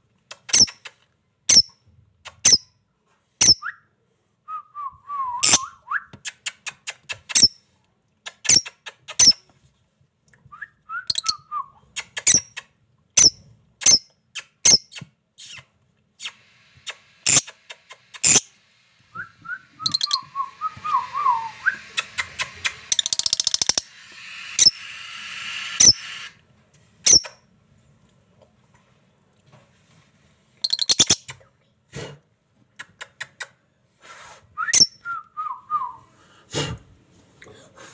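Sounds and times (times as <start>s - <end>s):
parrot whistled phrases: 5.3s - 6.0s, 19.1s - 23.8s
steady hiss: 16.2s - 26.4s
parrot shrill calls: 19.8s - 26.3s.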